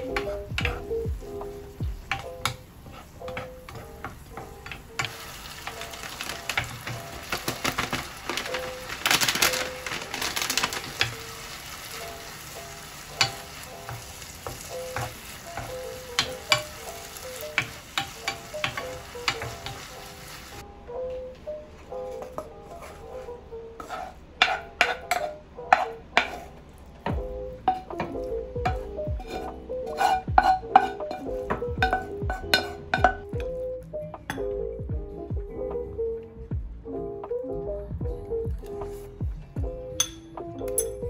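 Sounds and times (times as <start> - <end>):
background music: 0.0 - 41.0
food sizzling in a pan: 1.4 - 20.6
utensil clicking against pan: 17.4 - 19.8.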